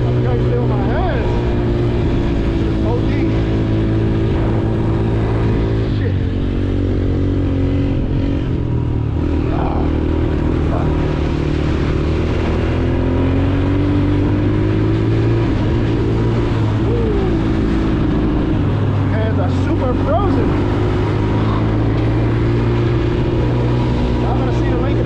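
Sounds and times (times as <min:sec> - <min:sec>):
atv engine running: 0:00.0 - 0:25.0.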